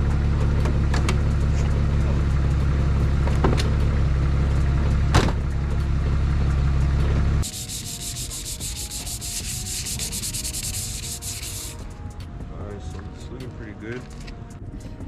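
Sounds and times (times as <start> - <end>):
steady low rumble: 0.0 - 7.5
sandpaper rubbing back and forth: 7.4 - 11.9.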